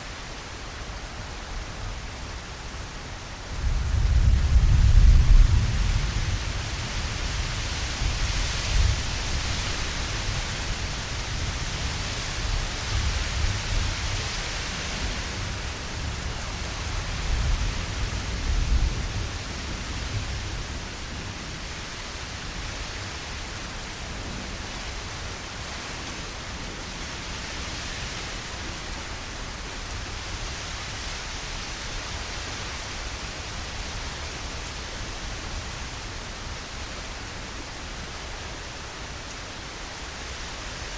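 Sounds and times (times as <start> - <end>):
low rumbles of thunder: 3.6 - 9.2.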